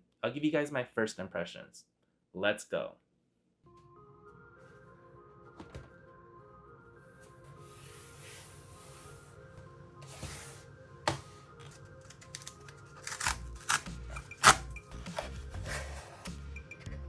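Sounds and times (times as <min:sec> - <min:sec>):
soft background music: 0:03.7 - 0:17.0
cardboard packaging tearing: 0:11.6 - 0:16.2.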